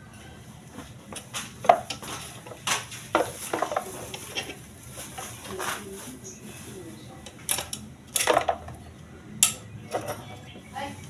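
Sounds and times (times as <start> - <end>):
metal parts clinking: 7.5 - 8.6.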